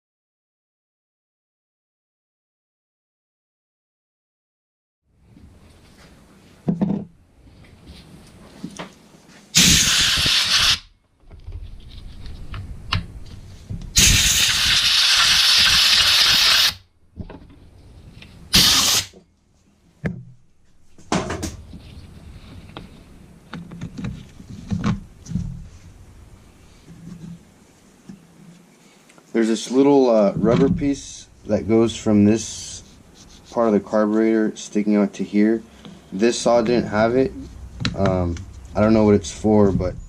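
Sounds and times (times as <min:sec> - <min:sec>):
hissing spray bursts: 0:09.5 - 0:10.9, 0:14.0 - 0:16.8, 0:18.5 - 0:19.2.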